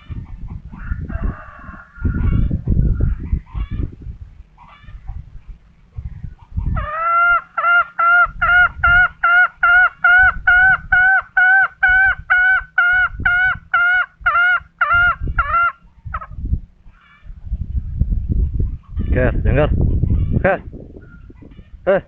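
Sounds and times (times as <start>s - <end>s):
junglefowl honking calls: 6.7s - 16.3s.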